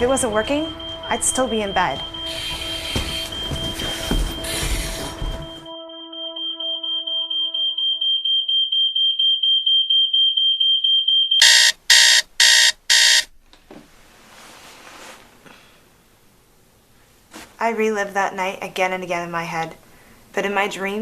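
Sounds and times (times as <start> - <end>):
smoke alarm tone pulsing: 0.0 - 13.3
harsh alarm blasts: 0.0 - 13.4.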